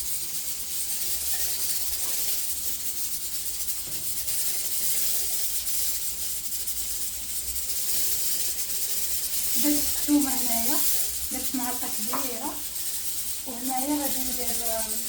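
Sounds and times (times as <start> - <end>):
mussels sizzling in a pan: 0.0 - 15.0.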